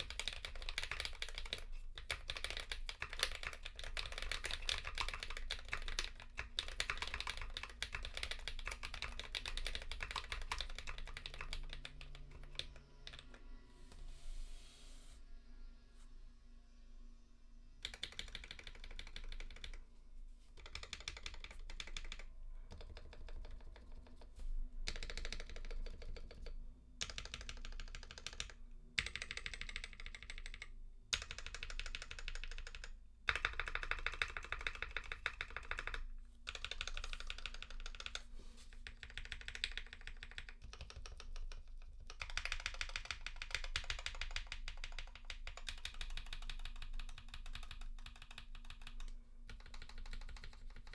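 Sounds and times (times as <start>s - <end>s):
mechanical keyboard typing: 0.0s - 13.4s, 17.8s - 19.8s, 20.6s - 24.3s, 24.9s - 50.9s.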